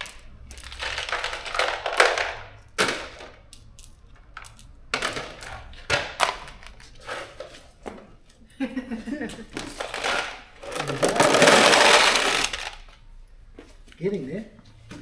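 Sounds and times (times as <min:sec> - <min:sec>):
bolts and nuts clattering: 0:00.0 - 0:08.4, 0:09.3 - 0:12.8.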